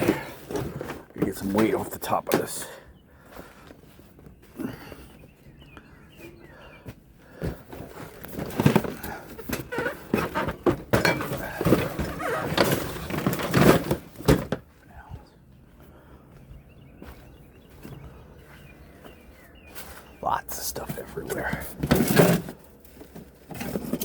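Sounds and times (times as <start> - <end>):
metal and plastic junk clattering: 0.0 - 2.8, 7.4 - 14.7, 20.8 - 24.0.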